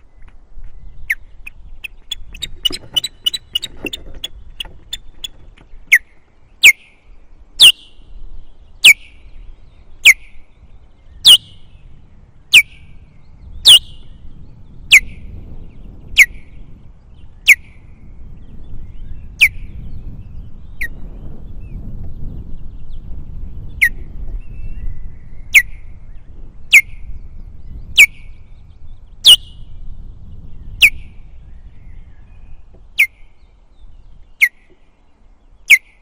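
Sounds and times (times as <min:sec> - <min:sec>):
osprey alarm calls: 0:01.1 - 0:07.0, 0:11.2 - 0:11.6, 0:13.7 - 0:14.0, 0:34.4 - 0:34.7, 0:35.6 - 0:36.0.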